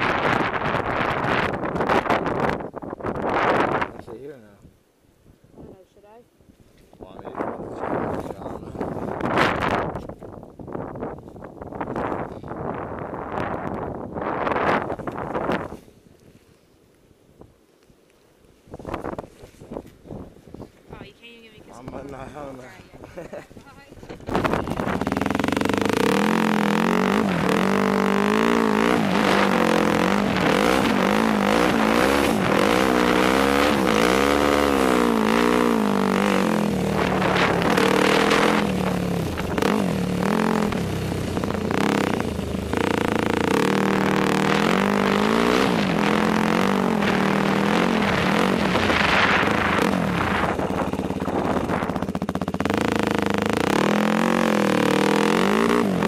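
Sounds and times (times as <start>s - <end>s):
quad engine revving: 24.2s - 56.0s.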